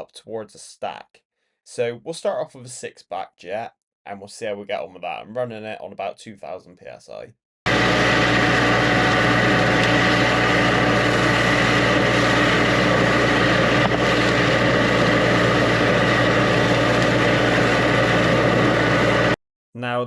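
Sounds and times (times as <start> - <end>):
drain jetter engine and pump hum: 7.7 - 19.4.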